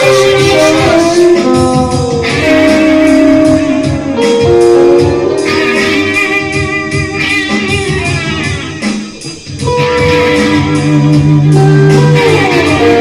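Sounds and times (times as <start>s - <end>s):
guitar note sliding down: 0.0s - 13.0s
instrumental rock music: 0.0s - 13.0s.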